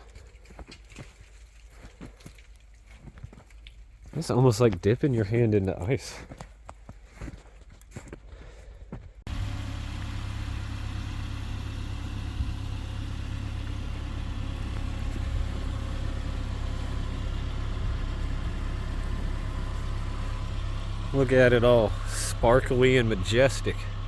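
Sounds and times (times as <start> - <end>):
engine idling with low rumble: 9.3 - 24.0.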